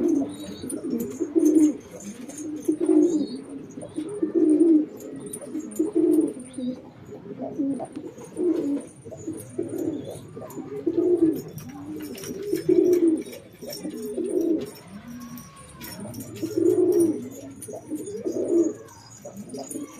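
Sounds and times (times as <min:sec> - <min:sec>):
pigeons cooing: 0:00.0 - 0:19.9.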